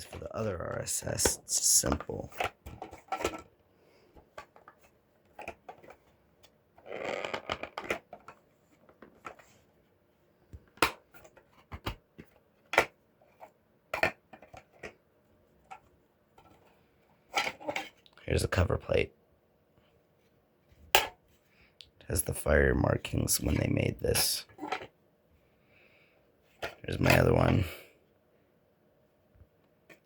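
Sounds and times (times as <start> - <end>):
clicks and knocks of handled device: 2.4 - 3.5.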